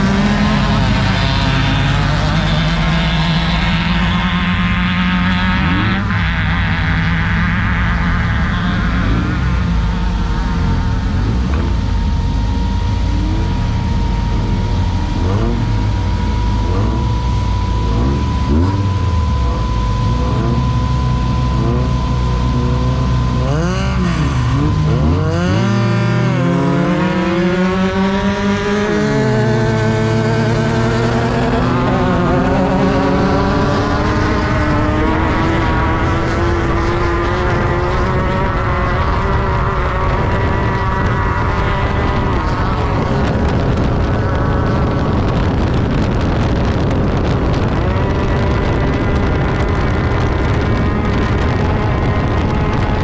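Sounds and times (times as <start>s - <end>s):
buggy engine revving: 0.0s - 53.0s
wind noise: 0.0s - 53.0s.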